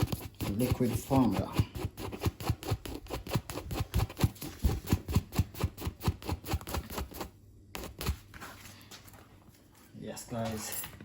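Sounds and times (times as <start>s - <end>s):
scrubber rasping on rubber tube: 0.0s - 8.2s.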